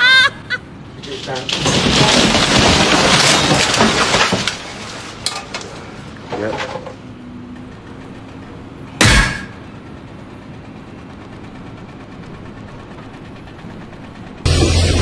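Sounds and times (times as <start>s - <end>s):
loud bang: 14.5s - 15.0s
loud low-pitched hum: 14.5s - 15.0s.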